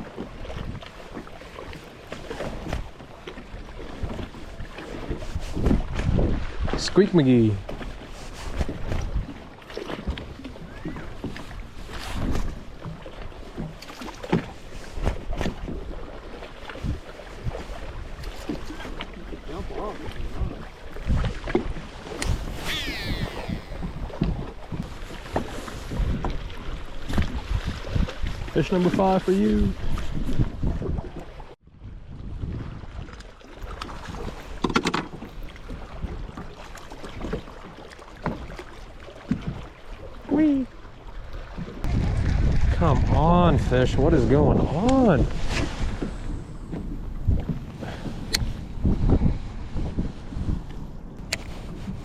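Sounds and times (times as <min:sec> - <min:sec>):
knocks and bumps on boat: 0:00.0 - 0:22.5, 0:23.7 - 0:29.1, 0:33.6 - 0:39.8, 0:44.5 - 0:52.0
boat engine low rumble: 0:00.0 - 0:52.0
wind buffeting microphone: 0:01.7 - 0:37.5, 0:41.1 - 0:52.0.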